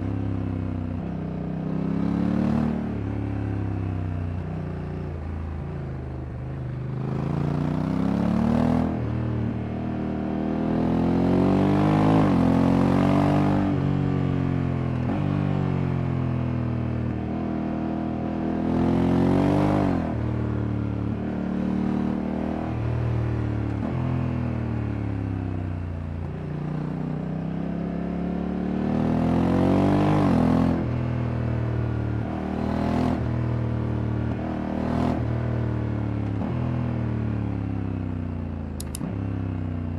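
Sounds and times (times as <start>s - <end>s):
motorcycle engine shifting gears: 38.8s - 39.6s.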